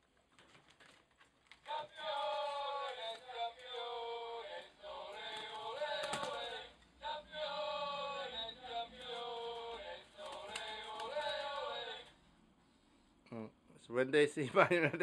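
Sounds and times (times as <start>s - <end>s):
men singing football chant: 1.7s - 12.1s.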